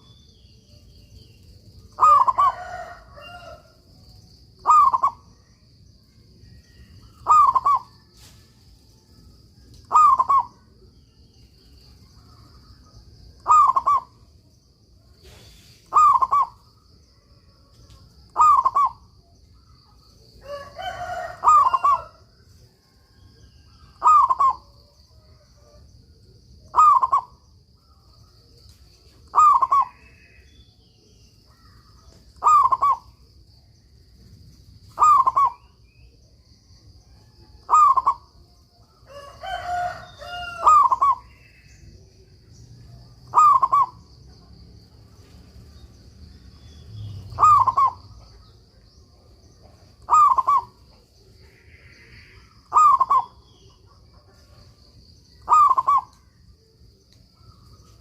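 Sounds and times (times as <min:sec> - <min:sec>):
dove cooing: 0:01.9 - 0:03.7, 0:04.6 - 0:05.3, 0:07.2 - 0:07.9, 0:09.9 - 0:10.7, 0:13.4 - 0:14.2, 0:15.3 - 0:16.7, 0:18.3 - 0:19.1, 0:20.4 - 0:22.2, 0:23.9 - 0:24.7, 0:26.7 - 0:27.4, 0:29.2 - 0:30.4, 0:32.4 - 0:33.2, 0:34.9 - 0:35.7, 0:37.5 - 0:38.2, 0:39.1 - 0:41.7, 0:43.3 - 0:44.0, 0:47.2 - 0:48.6, 0:49.2 - 0:54.3, 0:55.4 - 0:56.1
rougher bird call: 0:01.9 - 0:03.8, 0:04.6 - 0:05.3, 0:07.1 - 0:08.0, 0:09.9 - 0:10.6, 0:13.4 - 0:14.2, 0:15.4 - 0:16.7, 0:18.3 - 0:19.1, 0:23.9 - 0:24.8, 0:26.7 - 0:27.4, 0:29.3 - 0:30.7, 0:31.4 - 0:33.2, 0:34.9 - 0:35.8, 0:37.6 - 0:38.3, 0:39.1 - 0:41.8, 0:43.3 - 0:44.1, 0:46.8 - 0:48.2, 0:50.0 - 0:53.8, 0:55.4 - 0:56.2.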